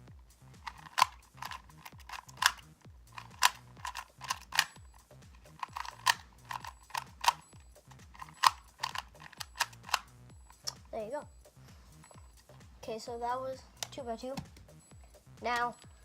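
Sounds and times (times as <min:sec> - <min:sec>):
puzzle cube clicking: 0:00.6 - 0:10.9.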